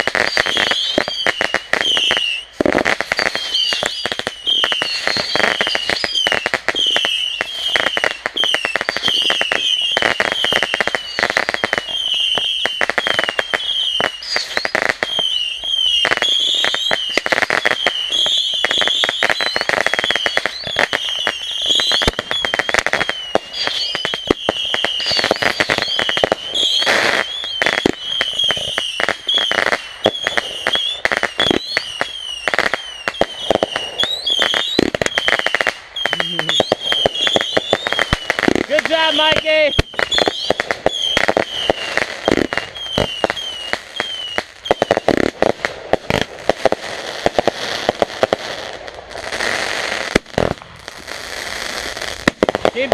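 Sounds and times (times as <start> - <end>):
firework whistles: 0.0 - 52.9
fireworks popping and crackling: 0.0 - 52.9.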